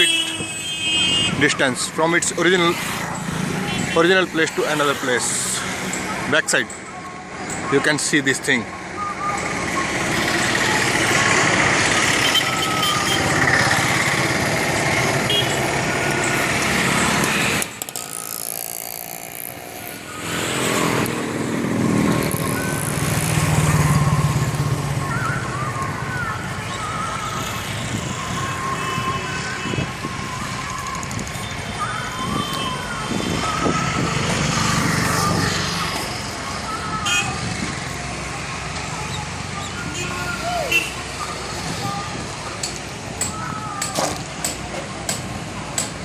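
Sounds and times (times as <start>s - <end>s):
car horns: 0.0s - 1.7s, 12.1s - 14.0s, 15.0s - 16.0s, 37.0s - 37.4s, 39.8s - 41.1s
motor vehicle traffic: 0.0s - 46.0s.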